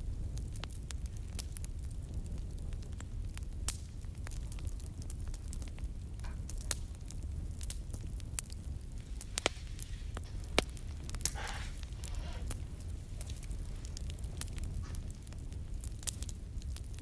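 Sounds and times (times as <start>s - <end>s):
wood fire crackling: 0.0s - 17.0s
low steady rumble: 5.4s - 17.0s
soft rustle: 8.7s - 16.0s.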